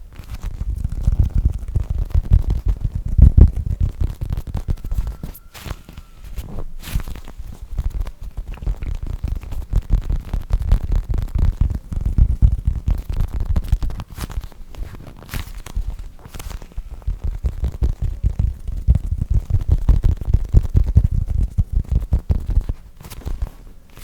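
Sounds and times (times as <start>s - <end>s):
foam toy rubbing on microphone: 0.0s - 24.0s.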